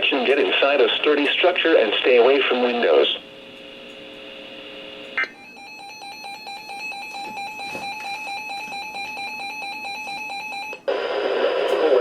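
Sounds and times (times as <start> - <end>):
pulsing electronic alarm tone: 5.2 - 10.8.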